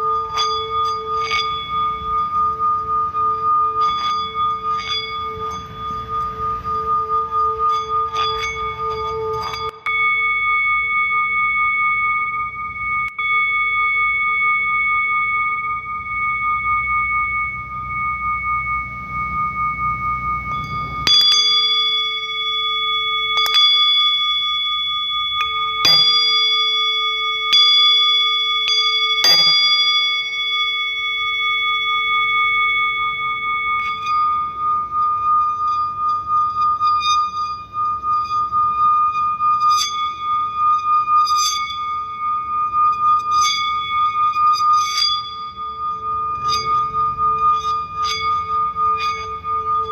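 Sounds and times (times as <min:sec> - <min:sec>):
light high bell strikes: 0:00.0 - 0:49.9
singing bowls ringing: 0:00.0 - 0:49.9
struck bowl tones: 0:00.0 - 0:49.9.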